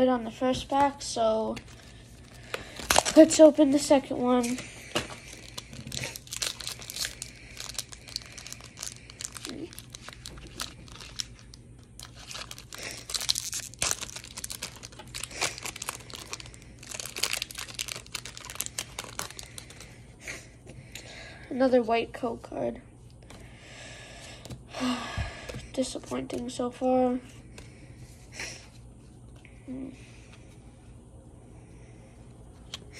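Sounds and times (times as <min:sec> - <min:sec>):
foil wrapper crinkling and tearing: 0:01.6 - 0:03.6, 0:04.4 - 0:20.0.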